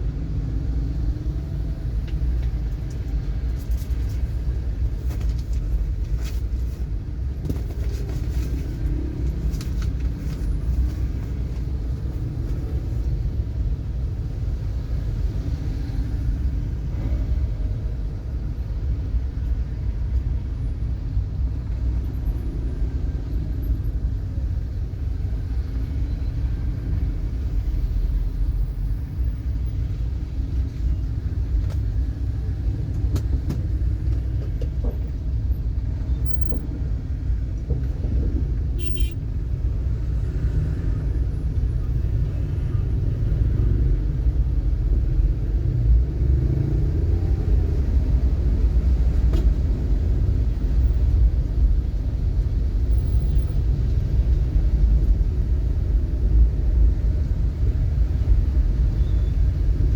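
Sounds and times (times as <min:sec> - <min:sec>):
vehicle driving rumble: 0:00.0 - 0:59.9
high-pitched chirp: 0:36.3 - 0:36.6, 0:38.8 - 0:39.2.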